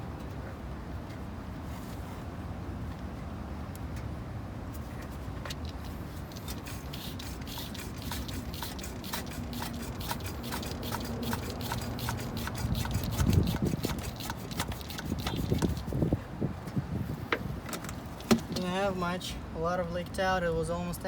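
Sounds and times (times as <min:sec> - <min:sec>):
hand pump sucking liquid: 0:05.6 - 0:16.1.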